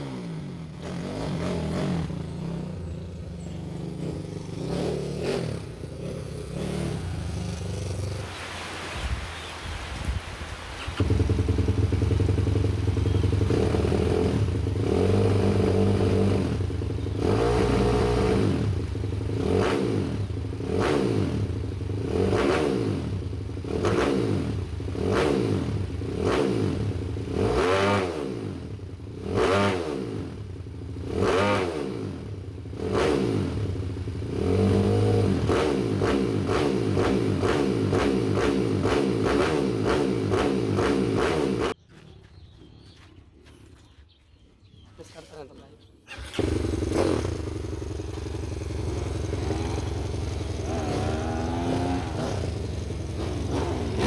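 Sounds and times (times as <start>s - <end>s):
motorcycle engine revving: 0.0s - 8.4s, 10.8s - 41.8s, 46.1s - 54.0s.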